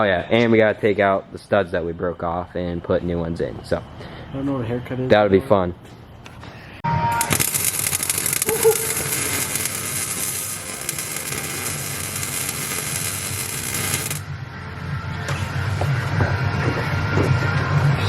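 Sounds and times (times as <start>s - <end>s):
welder arc crackling: 7.1s - 14.3s.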